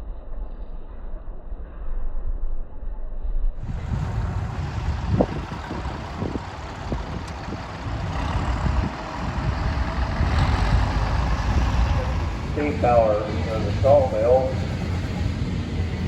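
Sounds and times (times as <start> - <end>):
vehicle engine rumbling: 3.6 - 16.0.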